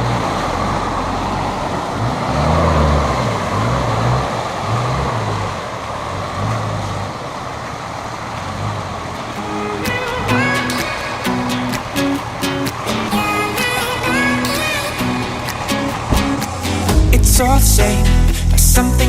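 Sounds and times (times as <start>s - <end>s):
road noise: 0.0s - 19.0s
vehicle engine humming: 0.0s - 19.0s
wind rushing: 15.3s - 18.5s.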